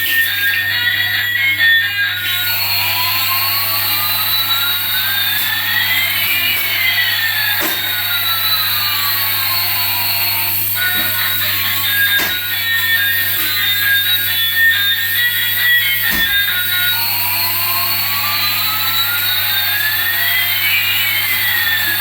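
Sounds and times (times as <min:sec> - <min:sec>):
jet-like hissing: 0:02.5 - 0:20.0.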